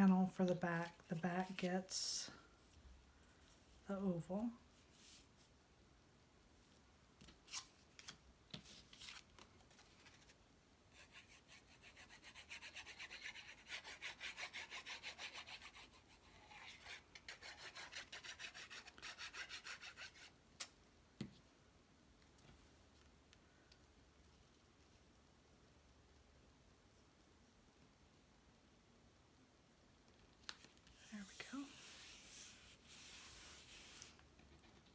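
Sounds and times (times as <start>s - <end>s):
rubbing on paper: 11.0s - 20.4s, 31.0s - 34.2s.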